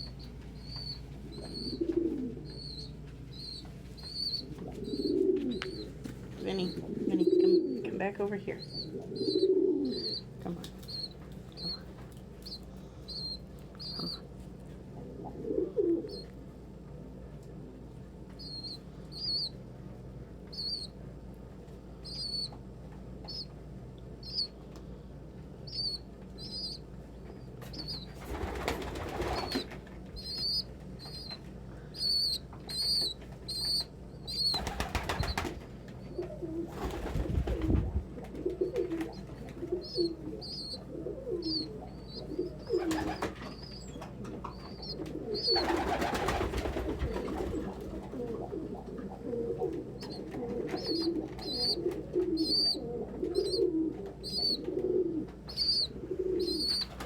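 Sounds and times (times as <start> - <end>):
pigeons cooing: 0.0 - 16.3, 27.7 - 57.0
pigeons peeping: 0.0 - 57.0
wings flapping: 27.7 - 31.5, 32.7 - 41.7, 42.3 - 57.0.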